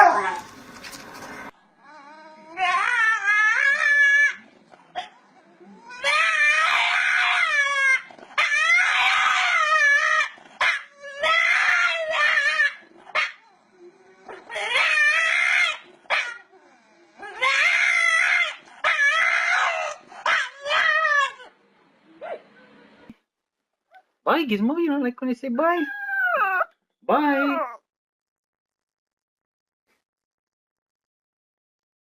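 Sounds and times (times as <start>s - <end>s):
dog howling: 1.8s - 21.5s, 25.9s - 27.8s.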